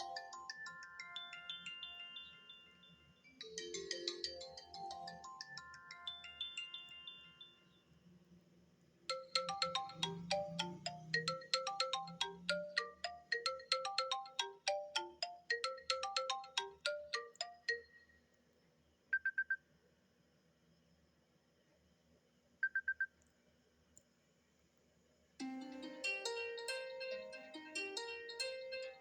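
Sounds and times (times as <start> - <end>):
plucked bell-like ringtone melody: 9.1 - 17.9, 25.4 - 29.0
fast high ringtone beeps: 9.1 - 18.0.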